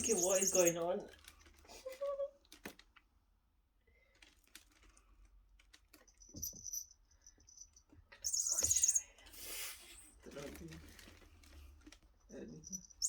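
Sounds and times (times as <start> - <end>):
cat toy electronic chirp: 0.0 - 0.8, 8.2 - 9.0.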